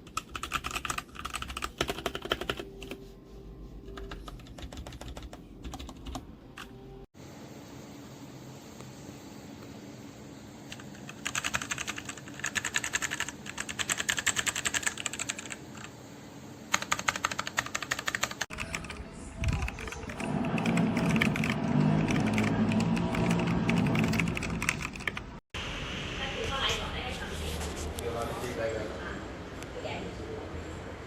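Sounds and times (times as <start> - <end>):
mechanical keyboard typing: 0.0 - 3.0, 3.9 - 6.7, 10.7 - 15.9, 16.7 - 25.3
low background hum: 0.0 - 31.0.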